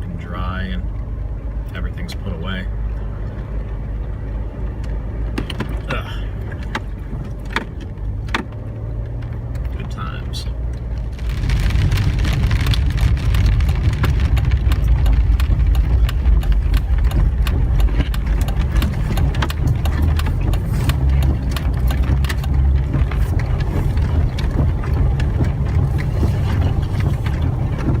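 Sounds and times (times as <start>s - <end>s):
engine and tyres rumbling: 0.0s - 28.0s
small sharp ticks and knocks: 10.7s - 28.0s.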